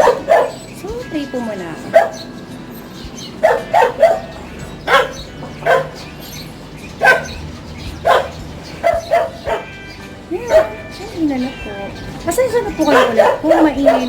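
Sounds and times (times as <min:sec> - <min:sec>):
dog barking: 0:00.0 - 0:00.8, 0:01.8 - 0:02.4, 0:03.2 - 0:09.8, 0:10.5 - 0:11.0, 0:12.8 - 0:14.0.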